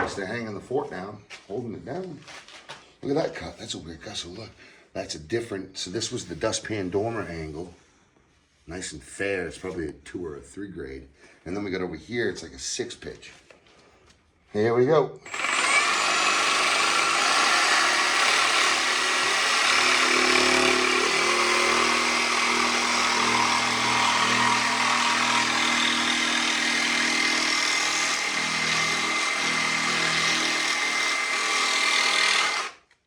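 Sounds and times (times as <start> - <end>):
electric jigsaw cutting wood: 15.3 - 33.0.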